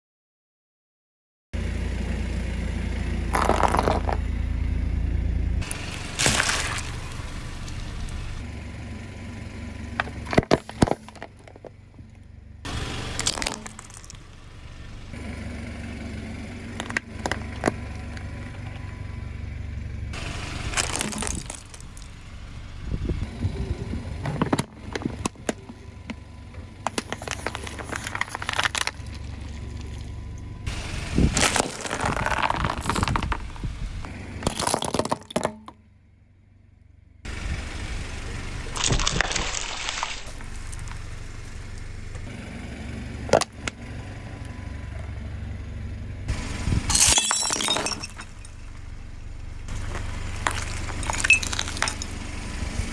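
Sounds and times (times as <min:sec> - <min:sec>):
car rumbling: 0:01.6 - 0:52.9
tyres crushing objects: 0:03.2 - 0:04.4, 0:05.6 - 0:08.4, 0:09.9 - 0:12.1, 0:12.7 - 0:15.2, 0:16.5 - 0:19.0, 0:20.2 - 0:35.8, 0:38.7 - 0:42.3, 0:43.2 - 0:43.8, 0:46.3 - 0:52.9.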